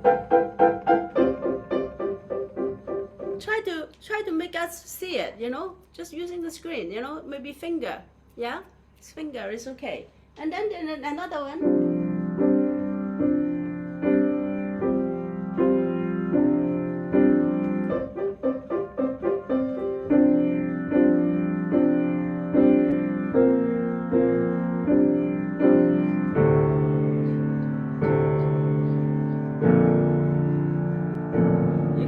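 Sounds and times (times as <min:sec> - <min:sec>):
piano chords: 0:00.0 - 0:03.8, 0:11.2 - 0:32.0.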